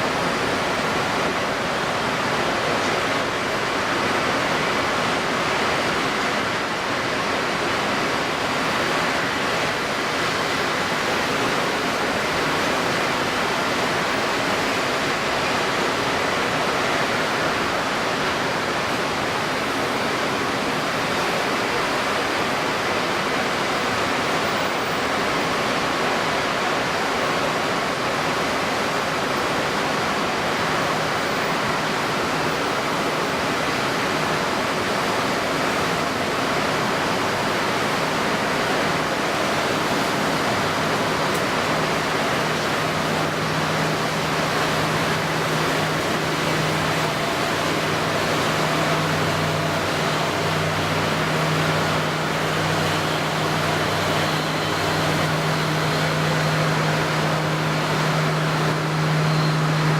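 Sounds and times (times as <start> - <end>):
wind-stirred water: 0.0 - 59.9.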